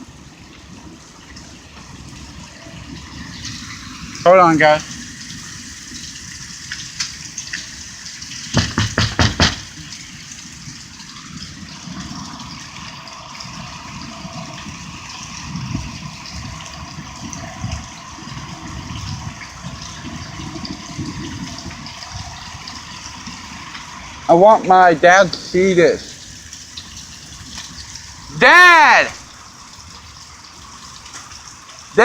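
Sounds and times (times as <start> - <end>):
rain with small hail: 0.0 - 32.0
water running: 1.7 - 32.0
sharp knocks: 8.5 - 9.8.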